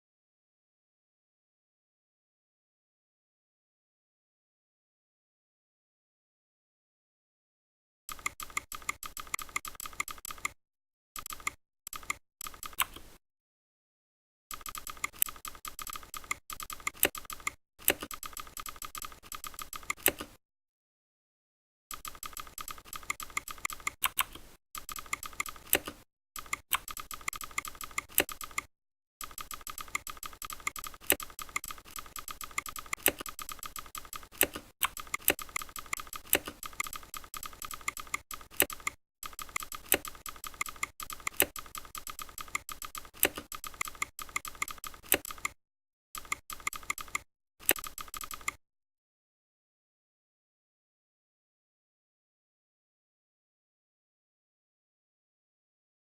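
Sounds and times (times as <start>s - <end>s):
mechanical keyboard key clicks: 21.9s - 45.6s.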